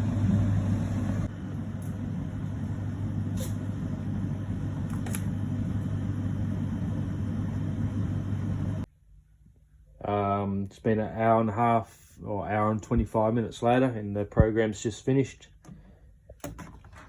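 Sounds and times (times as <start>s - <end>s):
dryer drum rumbling: 0.0s - 8.8s
clothes dryer humming: 0.0s - 8.9s.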